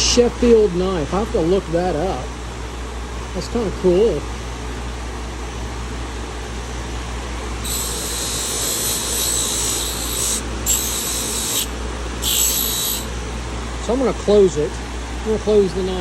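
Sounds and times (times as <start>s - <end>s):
low machinery hum: 4.2s - 16.0s
small power tool hissing: 7.6s - 13.1s.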